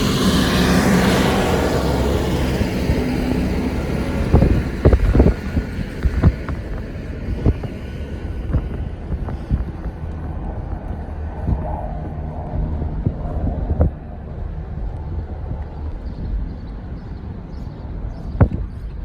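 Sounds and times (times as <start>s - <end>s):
car road and engine rumble: 0.0s - 19.0s.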